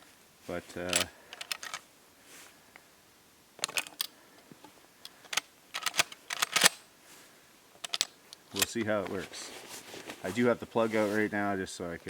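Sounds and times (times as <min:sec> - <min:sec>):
shotgun shells clicking into magazine: 0:00.8 - 0:01.8, 0:03.6 - 0:04.1, 0:05.0 - 0:06.8, 0:07.8 - 0:08.8.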